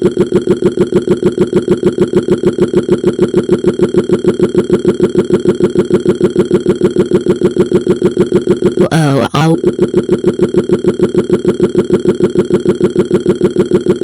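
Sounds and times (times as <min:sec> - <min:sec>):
cartoon burp stuttering: 0:08.8 - 0:09.6.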